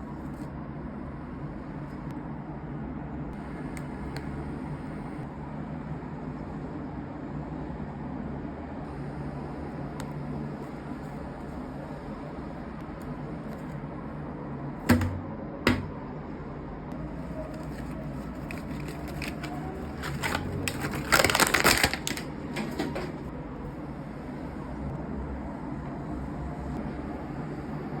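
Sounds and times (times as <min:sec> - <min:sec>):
sharp knocks: 0:14.9 - 0:16.0.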